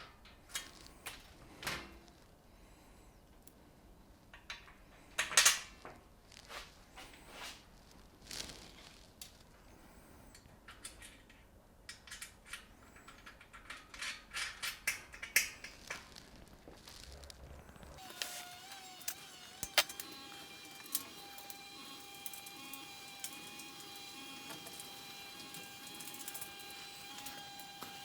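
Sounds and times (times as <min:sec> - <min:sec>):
metal bolts and nuts clinking: 0:18.0 - 0:28.0.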